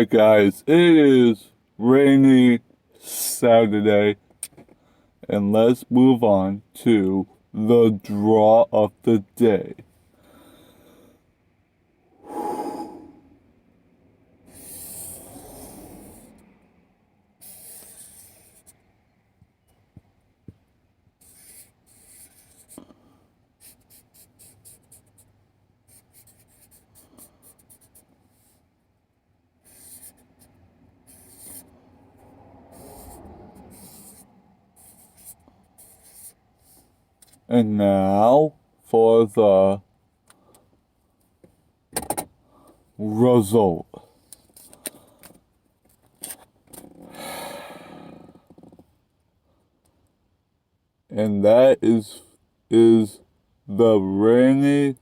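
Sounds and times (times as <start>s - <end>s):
pen scratching on paper: 14.5s - 16.4s, 17.4s - 18.8s, 21.2s - 22.8s, 23.6s - 25.3s, 25.9s - 28.6s, 29.6s - 31.7s, 32.7s - 36.8s.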